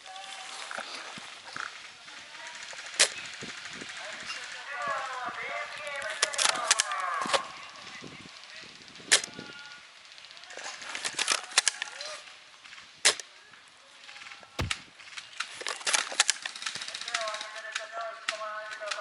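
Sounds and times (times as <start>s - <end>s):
airsoft gunshots: 14.6s - 14.8s
dull thump: 14.6s - 14.8s.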